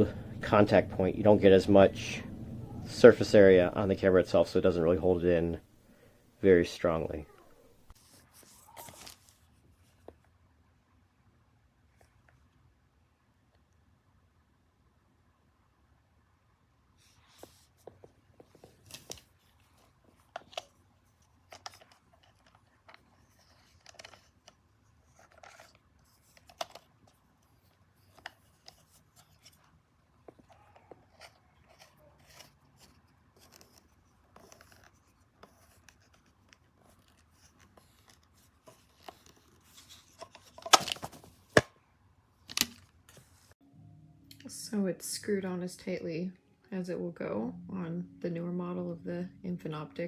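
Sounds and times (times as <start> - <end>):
hard plastic clicks and scrapes: 17.3 - 41.7, 42.5 - 43.3.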